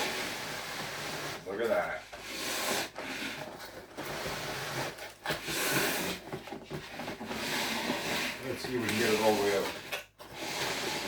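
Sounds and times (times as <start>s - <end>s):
cardboard box scraping and rustling: 2.7s - 11.0s.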